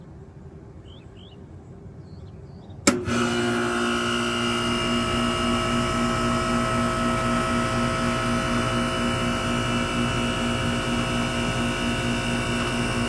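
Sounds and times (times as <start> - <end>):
compressor and fan humming: 2.8 - 13.0
heat pump clunk: 2.8 - 13.0.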